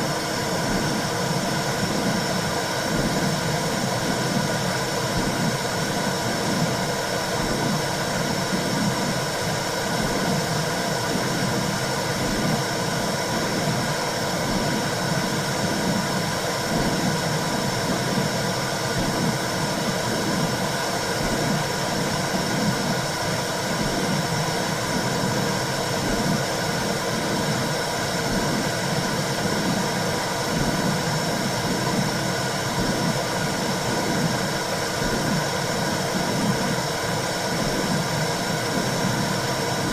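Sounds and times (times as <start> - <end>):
low heartbeat pulse: 9.9 - 10.5, 16.7 - 20.6, 21.2 - 23.0, 23.8 - 36.8, 37.5 - 39.9.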